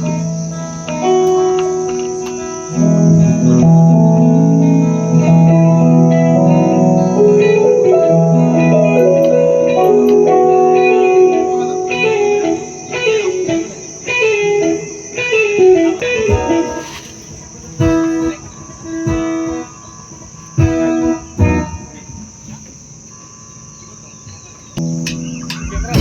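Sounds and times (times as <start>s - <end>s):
electric guitar notes: 0.0s - 26.0s
steady high hiss: 0.0s - 26.0s
low thumps: 16.0s - 22.9s.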